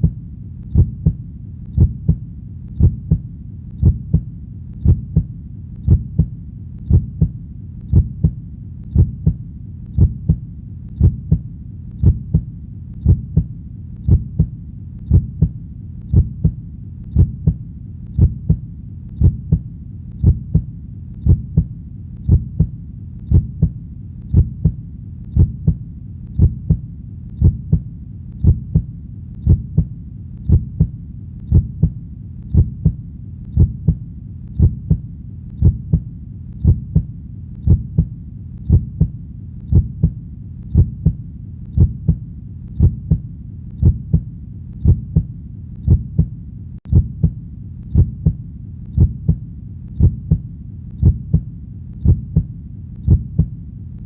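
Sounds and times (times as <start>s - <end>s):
heartbeat: 0.0s - 54.0s
low hum: 0.0s - 54.0s.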